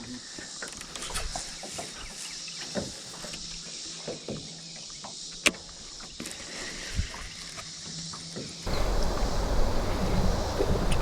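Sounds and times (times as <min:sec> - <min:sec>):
watery hiss of fast river: 0:08.7 - 0:11.0.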